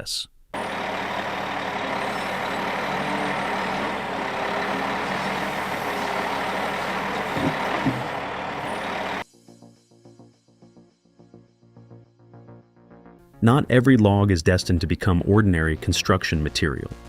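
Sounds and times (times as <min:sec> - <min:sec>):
heavy truck engine running: 0:00.6 - 0:09.2
road noise: 0:00.6 - 0:09.2.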